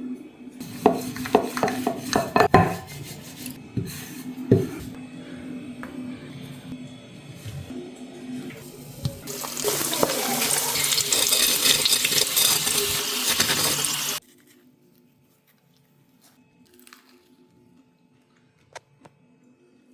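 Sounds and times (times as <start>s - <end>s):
water running loudly: 9.2s - 14.2s.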